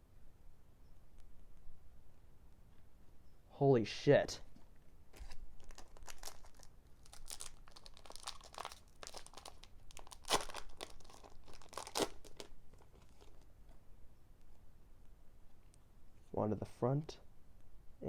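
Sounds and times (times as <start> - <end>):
foil pack and cards crinkling: 5.1 - 13.5.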